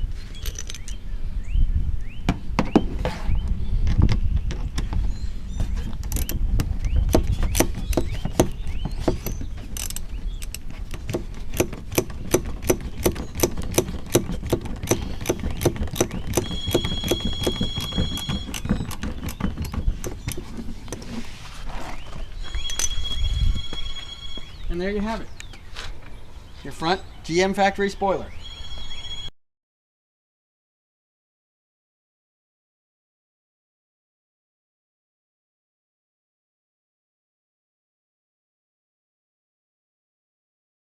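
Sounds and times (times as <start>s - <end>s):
socket ratchet clicking: 9.2s - 21.0s.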